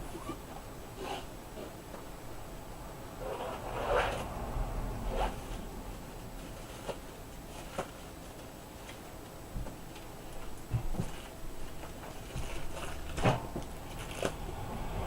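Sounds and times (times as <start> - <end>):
handling rustling: 6.4 - 14.4.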